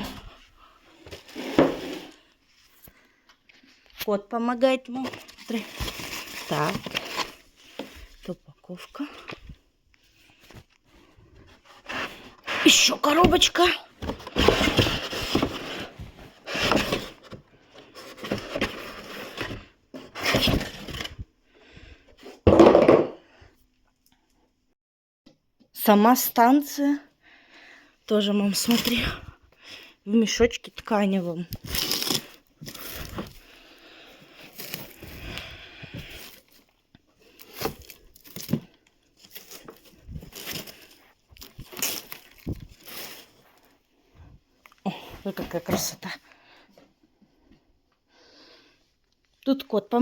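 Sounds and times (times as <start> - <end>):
packaging scraping and rustling: 4.9 - 8.2, 11.4 - 21.2, 31.5 - 43.8
sharp packaging crunch: 31.5 - 33.2.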